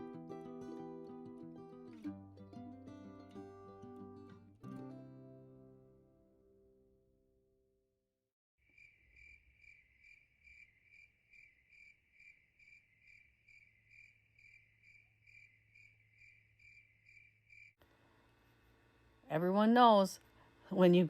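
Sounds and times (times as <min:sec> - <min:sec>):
faint insect chirping: 0:08.6 - 0:19.2.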